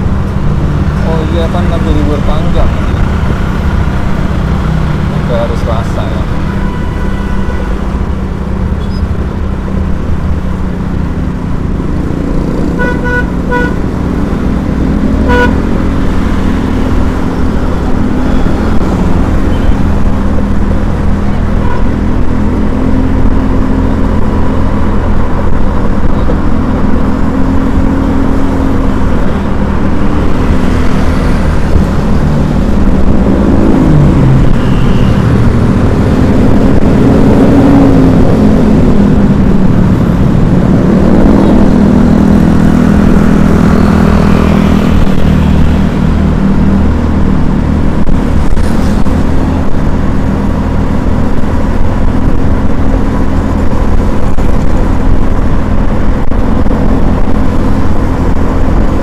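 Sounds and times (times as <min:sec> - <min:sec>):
vehicle engine and road noise: 0:00.0 - 0:59.0
car horn beeps: 0:06.4 - 0:07.8, 0:12.8 - 0:13.8, 0:15.2 - 0:15.6, 0:19.5 - 0:19.8, 0:21.6 - 0:22.0, 0:34.5 - 0:35.3.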